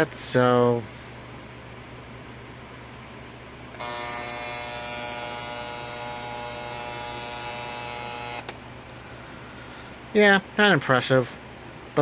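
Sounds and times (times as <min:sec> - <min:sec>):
alarm clock buzzer: 0:03.8 - 0:08.4.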